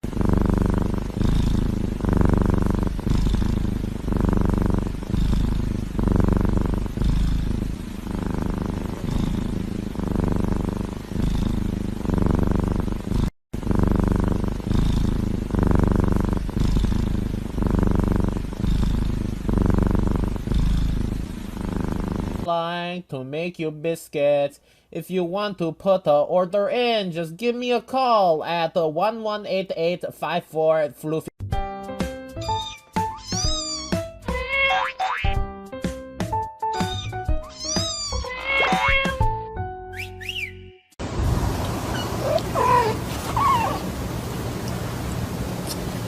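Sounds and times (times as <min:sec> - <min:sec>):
cat purring loudly: 0:00.0 - 0:22.5, 0:36.8 - 0:39.3, 0:41.0 - 0:46.0.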